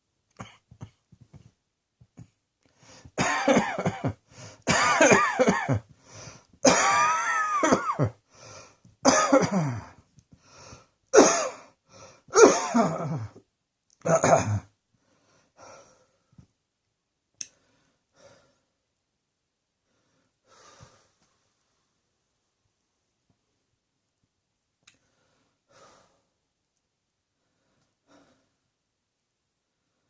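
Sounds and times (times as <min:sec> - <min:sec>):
person coughing: 0:03.2 - 0:05.9, 0:06.6 - 0:08.2, 0:09.1 - 0:10.0, 0:11.2 - 0:11.7, 0:12.3 - 0:13.4, 0:14.0 - 0:14.7.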